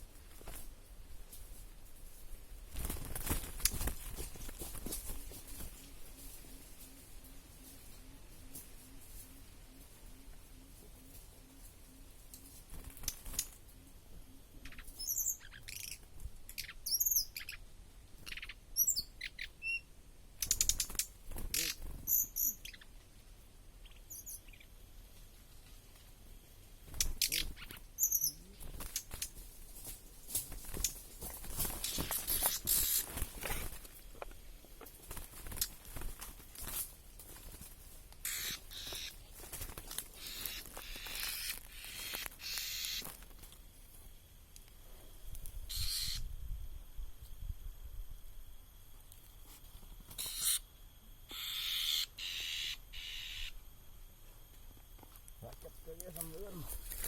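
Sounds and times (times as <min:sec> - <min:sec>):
rustling: 0:00.0 - 0:10.0
bird chirps: 0:14.6 - 0:17.6, 0:18.2 - 0:23.0, 0:23.8 - 0:24.8, 0:27.0 - 0:28.6, 0:45.7 - 0:46.3
sharp clicks: 0:20.4 - 0:21.8.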